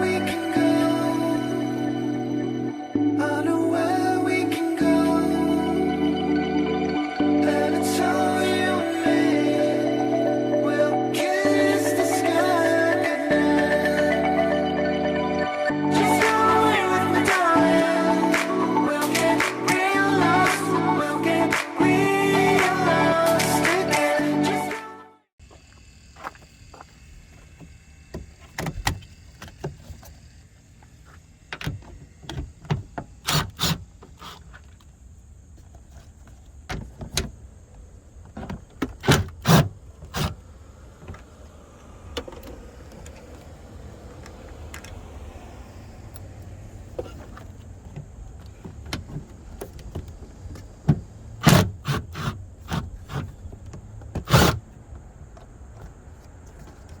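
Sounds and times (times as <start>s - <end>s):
hand tools clicking on car parts: 30.8s - 37.4s, 38.2s - 40.4s, 46.1s - 57.0s.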